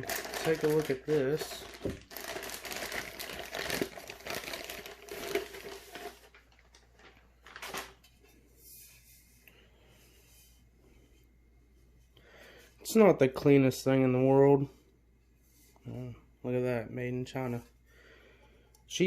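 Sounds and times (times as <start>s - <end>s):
plastic packaging crinkling: 0.0s - 8.1s.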